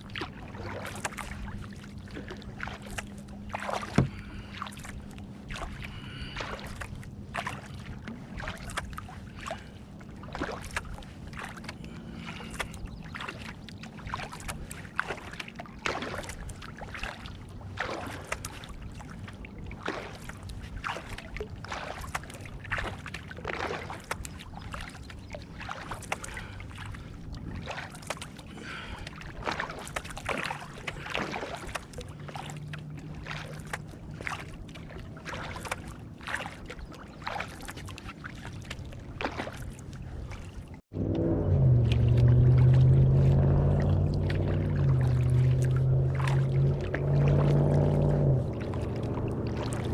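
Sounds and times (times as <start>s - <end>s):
paddles splashing in water: 0.0s - 49.9s
low steady hum: 39.8s - 49.9s.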